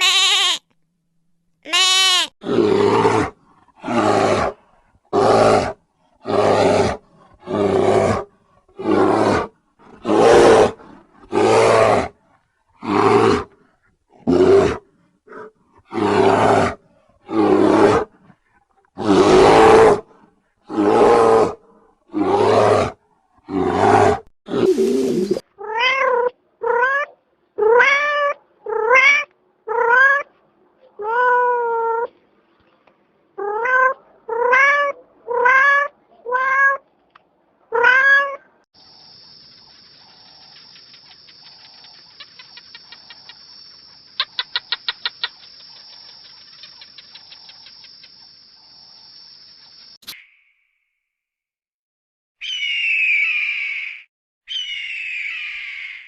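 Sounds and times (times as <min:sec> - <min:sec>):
cat meowing: 0:01.7 - 0:02.3, 0:37.7 - 0:38.4.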